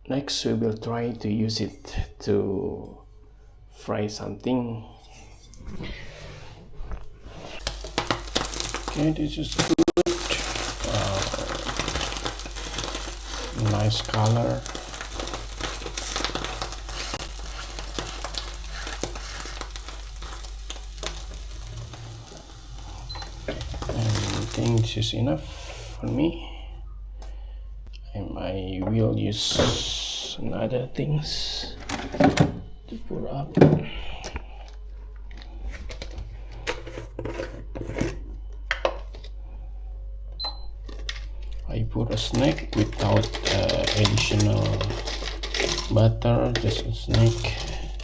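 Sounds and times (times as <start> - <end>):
small crackles: 7.5 - 25.0, 40.8 - 48.0
food sizzling in a frying pan: 7.6 - 25.0, 43.0 - 48.0.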